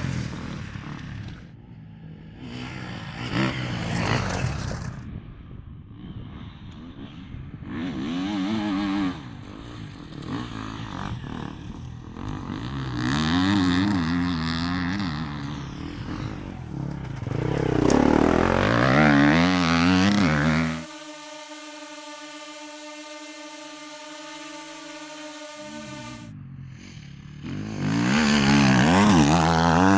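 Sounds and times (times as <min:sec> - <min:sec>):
motorcycle engine revving: 0:00.0 - 0:22.1, 0:23.2 - 0:29.9
steady held tone: 0:09.9 - 0:26.6.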